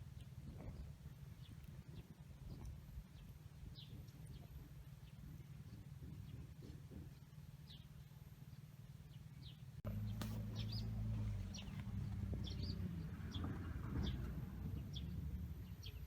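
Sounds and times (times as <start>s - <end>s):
small birds chirping: 0.0s - 16.0s
steady low rumble: 9.8s - 16.0s.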